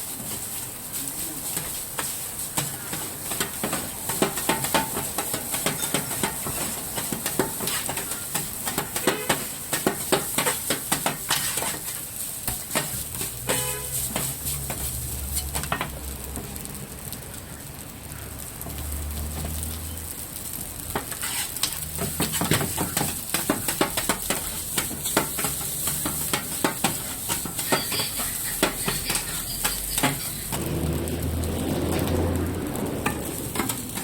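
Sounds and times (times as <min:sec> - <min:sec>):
rice sizzling on hot plate: 0:00.0 - 0:34.0
metal spatula clanking and scraping: 0:01.5 - 0:15.9, 0:21.0 - 0:30.7, 0:33.0 - 0:34.0.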